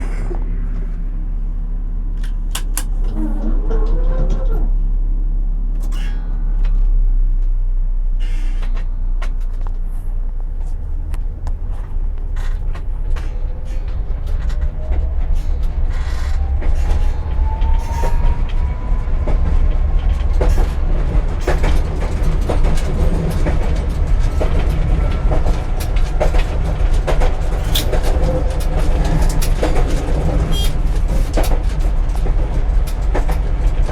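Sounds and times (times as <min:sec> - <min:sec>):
low rumble: 0:00.0 - 0:33.9
tram wheels knocking on rail joints: 0:08.5 - 0:33.9
rising whine: 0:10.6 - 0:29.4.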